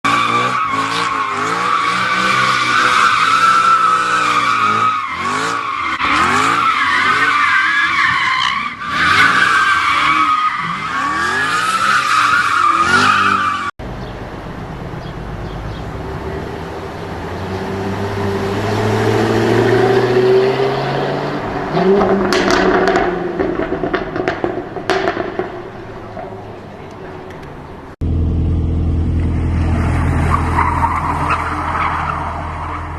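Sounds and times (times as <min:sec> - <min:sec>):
car engine revving: 0:14.6 - 0:26.7, 0:28.0 - 0:32.8.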